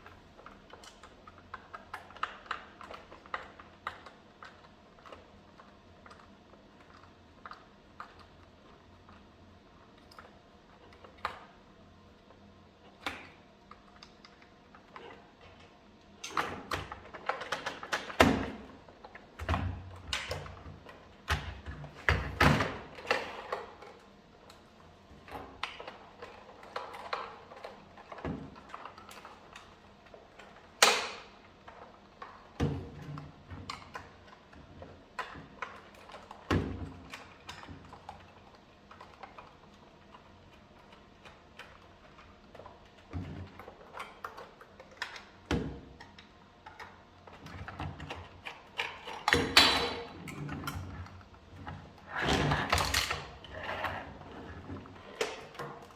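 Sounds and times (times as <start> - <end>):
clicks and knocks of plastic parts: 13.1 - 55.9.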